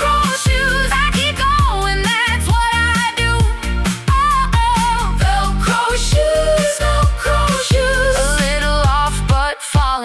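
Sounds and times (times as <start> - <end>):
pop music with steady beat: 0.0 - 10.0.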